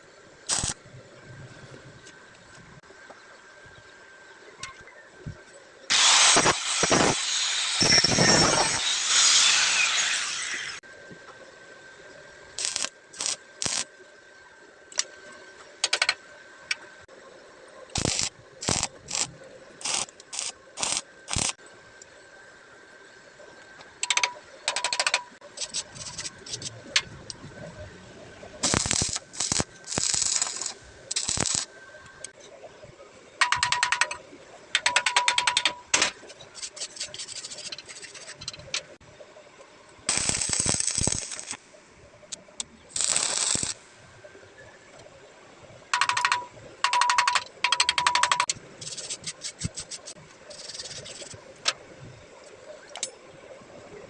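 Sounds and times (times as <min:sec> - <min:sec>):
welding arc crackling: 0:00.4 - 0:00.8, 0:05.9 - 0:10.8, 0:12.6 - 0:13.9, 0:17.9 - 0:21.6, 0:24.0 - 0:27.0, 0:28.6 - 0:32.3, 0:40.1 - 0:41.6, 0:42.9 - 0:43.9, 0:47.2 - 0:51.4.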